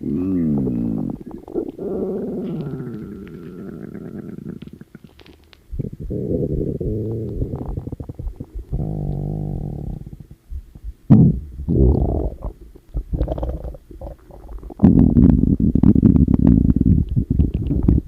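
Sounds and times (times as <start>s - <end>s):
stomach growling and gurgling: 0.0s - 18.0s.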